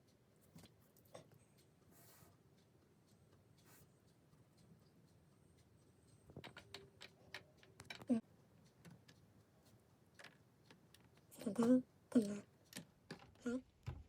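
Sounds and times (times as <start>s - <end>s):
plastic toy bricks clicking: 6.4s - 8.2s.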